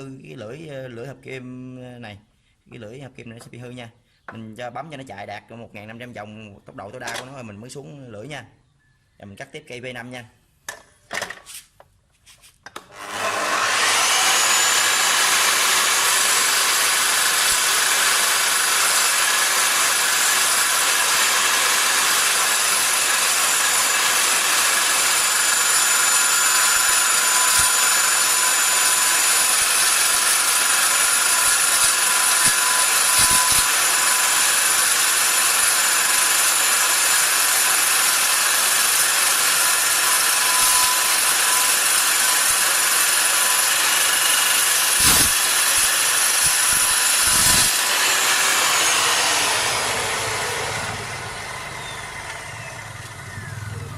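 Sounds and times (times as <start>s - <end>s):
chop saw cutting steel: 12.7s - 53.7s.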